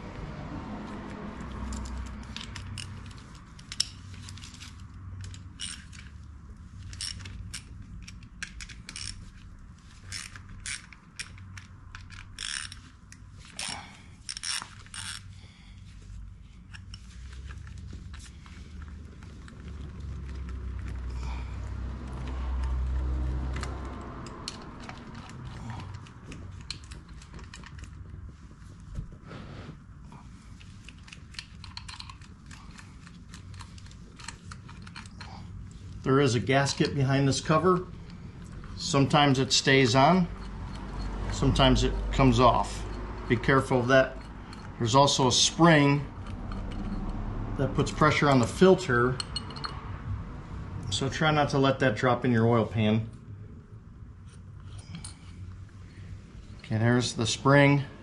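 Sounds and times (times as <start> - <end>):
socket ratchet clicking: 1.4 - 6.2, 6.8 - 15.3.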